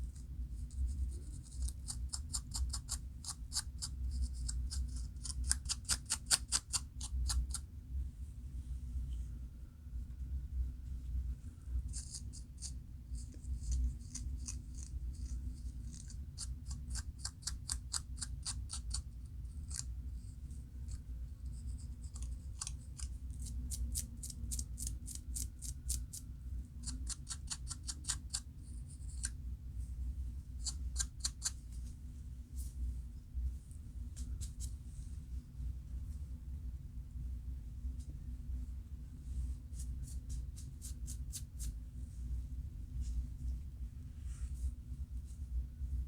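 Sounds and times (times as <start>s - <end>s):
steady low hum: 0.0s - 46.0s
scalp scratching through hair: 11.9s - 17.6s, 39.7s - 41.7s.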